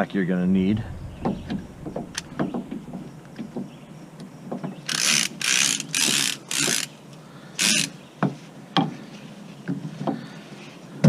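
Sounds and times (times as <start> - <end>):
strap ratchet clicking: 4.9 - 6.9.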